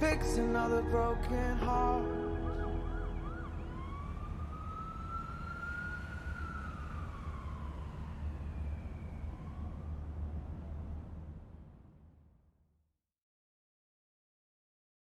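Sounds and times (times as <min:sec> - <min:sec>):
sliding electronic synth tone: 0:00.0 - 0:05.2
steady low rumble: 0:00.0 - 0:12.6.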